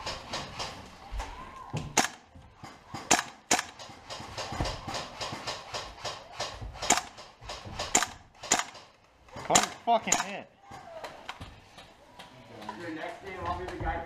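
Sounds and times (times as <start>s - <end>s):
airsoft gun shots: 1.9s - 2.3s, 2.9s - 8.9s, 9.5s - 10.4s.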